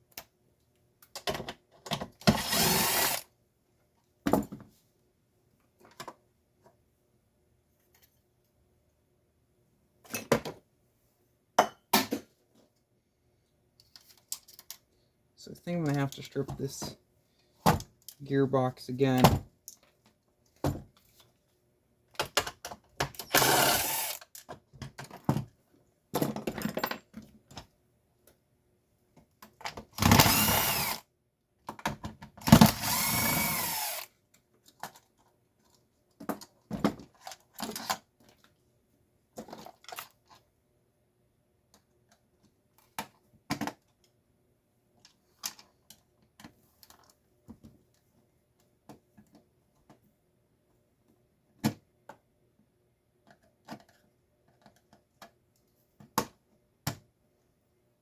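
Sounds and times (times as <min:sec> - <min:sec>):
power drill running: 0:02.3 - 0:03.2, 0:23.3 - 0:24.2, 0:30.0 - 0:31.0, 0:32.6 - 0:34.1
parts and tools clicking: 0:23.1 - 0:24.5, 0:30.0 - 0:31.0, 0:32.4 - 0:34.1.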